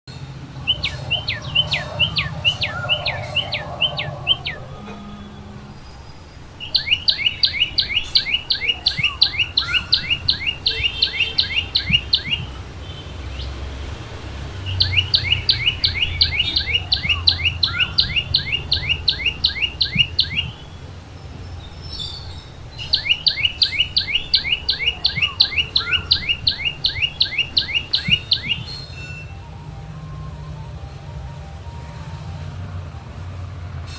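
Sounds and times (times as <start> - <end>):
bird singing sharp notes: 0.5 - 12.6, 14.7 - 20.8, 22.0 - 29.3.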